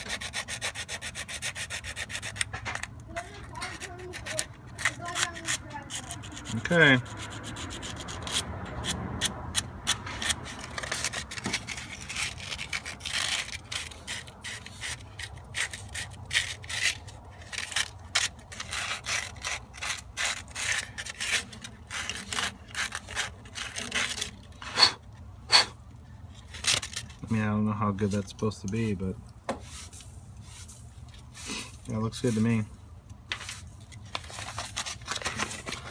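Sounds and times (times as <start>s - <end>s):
sandpaper scratching on metal: 0.0s - 2.4s, 3.5s - 8.5s, 18.5s - 25.8s.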